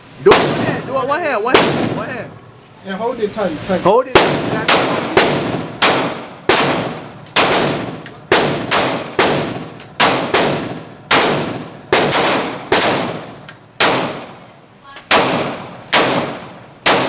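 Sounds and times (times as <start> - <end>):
gunshots echoing: 0.3 - 2.3, 4.1 - 14.4, 15.1 - 17.0.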